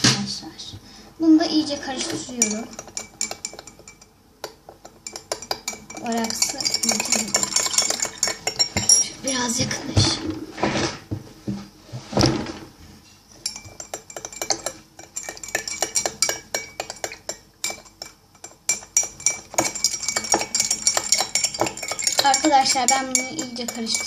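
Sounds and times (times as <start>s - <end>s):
metal spoon clinking in bowl: 2.3s - 9.5s, 13.4s - 24.0s.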